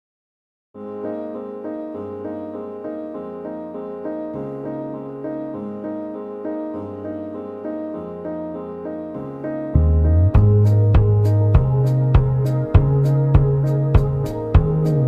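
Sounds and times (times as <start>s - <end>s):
soft piano melody: 0.8s - 15.0s
sustained bass notes: 9.8s - 15.0s.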